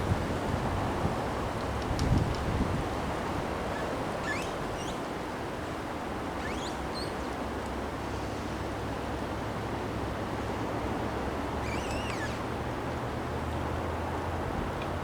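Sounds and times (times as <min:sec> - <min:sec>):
faint high rising chirps: 0:11.6 - 0:12.4.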